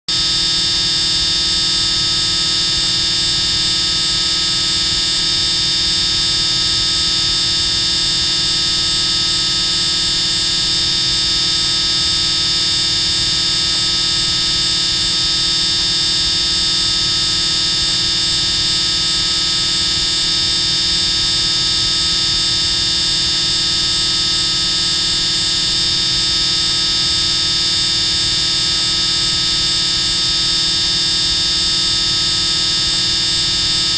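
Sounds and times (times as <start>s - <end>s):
loud steady buzzing: 0.1s - 33.9s.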